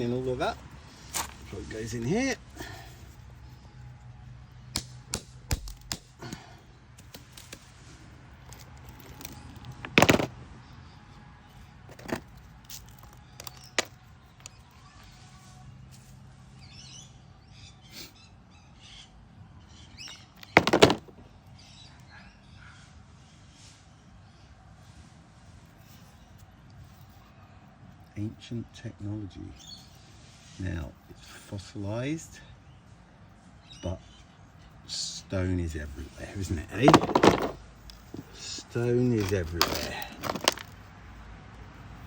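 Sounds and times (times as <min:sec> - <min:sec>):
stones clicking together: 0:08.5 - 0:10.3, 0:20.4 - 0:21.1, 0:39.2 - 0:40.8
loud stone knocks: 0:20.6 - 0:21.1.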